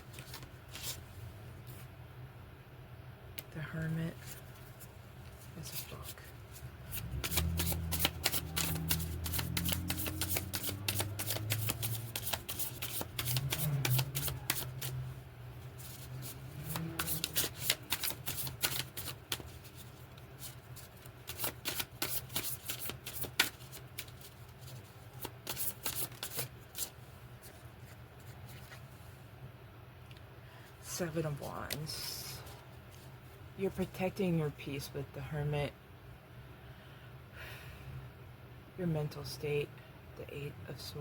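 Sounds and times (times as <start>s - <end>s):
cards being shuffled: 0.1s - 1.0s, 6.9s - 15.0s, 15.8s - 28.9s.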